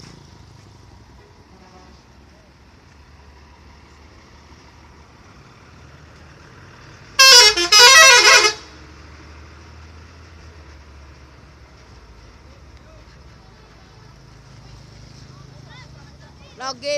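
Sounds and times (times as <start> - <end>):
musical horn changing tones: 7.2 - 8.7.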